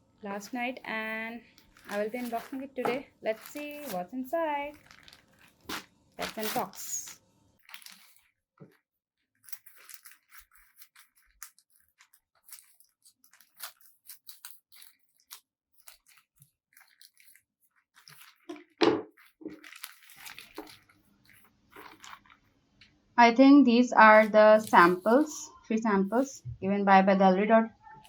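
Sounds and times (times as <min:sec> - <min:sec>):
packaging crinkling and tearing: 0:00.4 - 0:08.3, 0:09.4 - 0:18.5, 0:19.1 - 0:22.5, 0:24.1 - 0:25.3.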